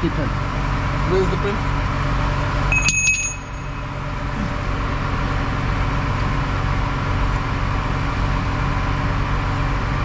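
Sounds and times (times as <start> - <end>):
diesel truck engine idling: 0.0 - 10.0
metallic ring: 2.7 - 4.0.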